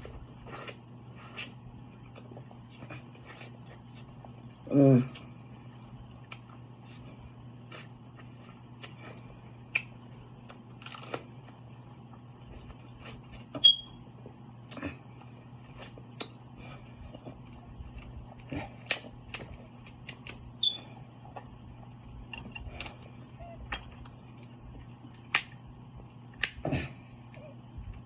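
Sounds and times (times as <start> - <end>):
steady low hum: 0.0 - 28.0
sharp short squeaks: 13.6 - 14.0.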